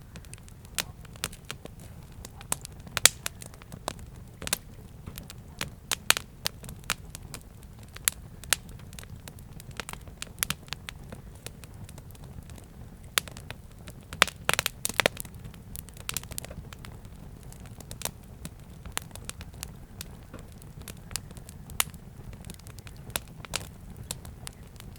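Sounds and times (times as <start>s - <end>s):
wood fire crackling and popping: 0.0s - 24.9s.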